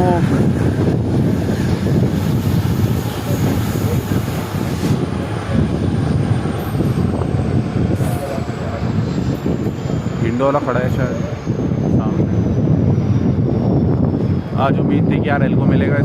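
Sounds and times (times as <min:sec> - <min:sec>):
diesel locomotive engine: 0:00.0 - 0:16.0.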